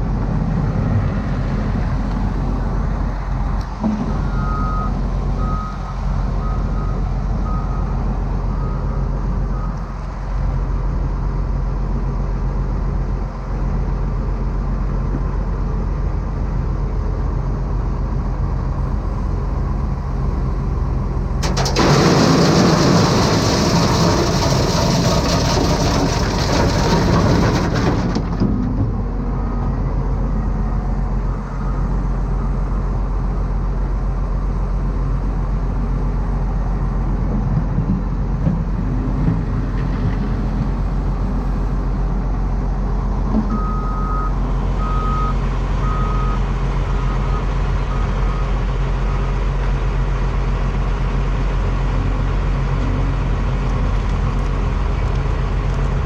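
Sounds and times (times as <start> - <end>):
dump truck engine running: 0.0 - 56.0
short reversing beeps: 43.5 - 46.4.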